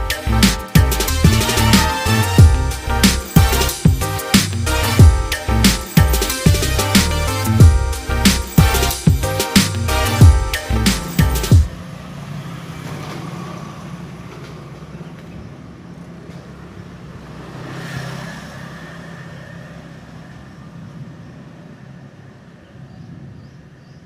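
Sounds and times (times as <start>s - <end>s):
road traffic engine hum: 0.0s - 24.0s
vehicle passing close: 0.2s - 22.8s.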